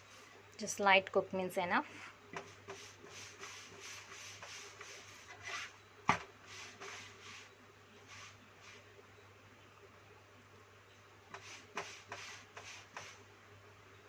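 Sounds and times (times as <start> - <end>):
rubbing and scraping on griddle: 1.9 - 5.8, 6.4 - 8.9, 11.3 - 13.2.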